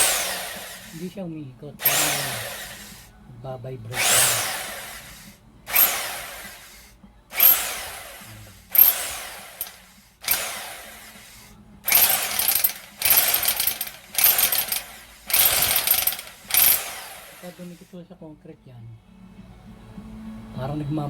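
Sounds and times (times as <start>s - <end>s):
rotary hammer drill hammering: 0.0s - 1.2s, 1.8s - 3.1s, 3.9s - 17.9s.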